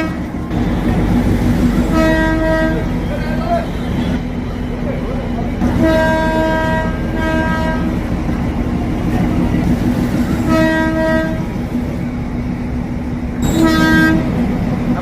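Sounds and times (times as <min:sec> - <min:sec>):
train horn honking: 0:00.0 - 0:00.3, 0:01.8 - 0:04.2, 0:05.6 - 0:08.1, 0:10.3 - 0:11.5, 0:13.4 - 0:14.4
steady rumble: 0:00.0 - 0:15.0.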